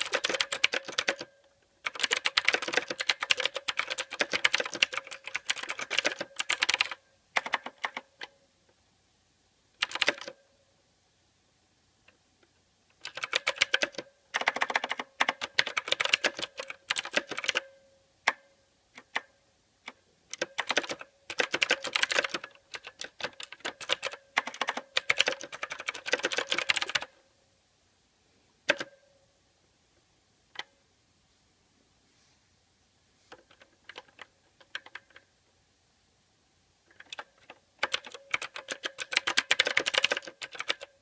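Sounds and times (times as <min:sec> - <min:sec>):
mechanical keyboard typing: 0:00.0 - 0:08.4, 0:09.8 - 0:10.4, 0:12.9 - 0:18.4, 0:19.0 - 0:27.1, 0:28.6 - 0:29.0, 0:33.3 - 0:35.3, 0:36.9 - 0:41.0.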